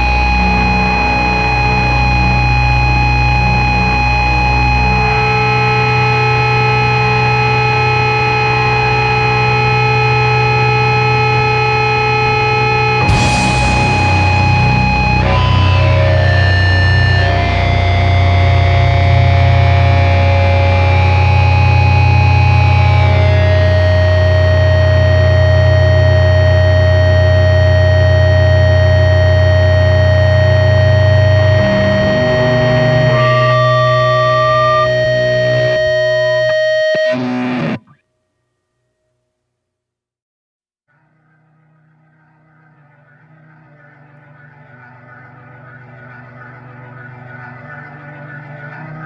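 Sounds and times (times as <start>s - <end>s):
buzzing amplifier noise: 0.0s - 38.0s
loud low drone: 11.5s - 36.7s
held higher tone: 13.0s - 18.9s, 30.7s - 37.9s.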